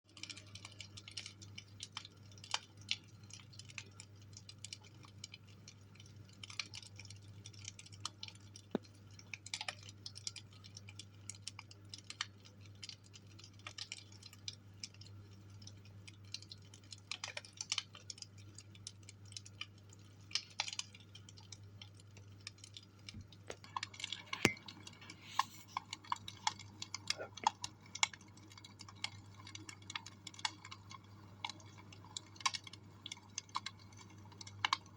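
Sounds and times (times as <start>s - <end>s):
low steady hum: 0.1s - 34.9s
wood fire crackling: 0.1s - 34.9s.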